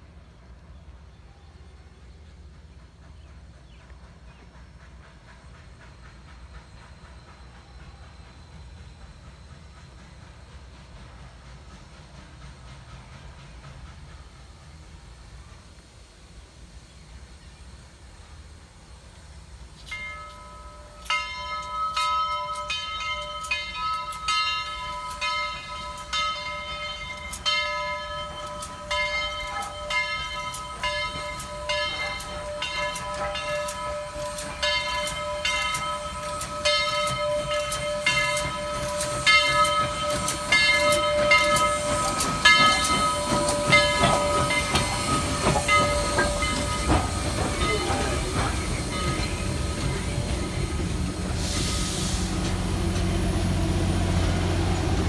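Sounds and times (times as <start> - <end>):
train rumble: 0.0 - 55.0
railroad bell ringing: 19.8 - 55.0.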